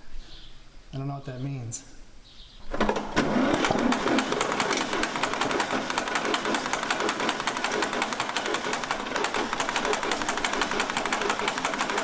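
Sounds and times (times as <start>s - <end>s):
man talking: 0.9s - 2.0s
tractor engine popping unevenly: 3.2s - 12.0s.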